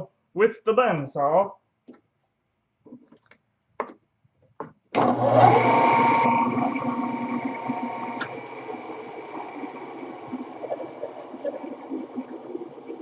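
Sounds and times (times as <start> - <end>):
bandsaw motor humming: 5.0 - 13.0.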